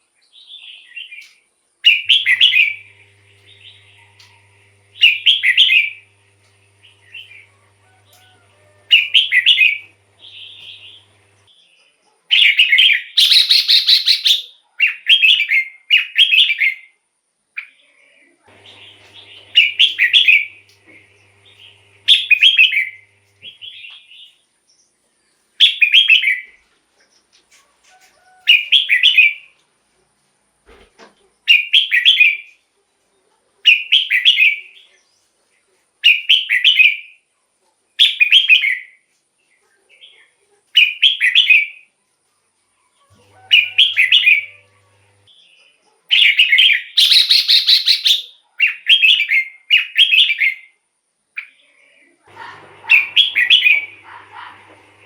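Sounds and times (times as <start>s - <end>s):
bird singing warbled phrases: 1.9s - 6.1s, 8.9s - 11.4s, 12.3s - 16.6s, 46.1s - 50.6s, 51.4s - 54.7s.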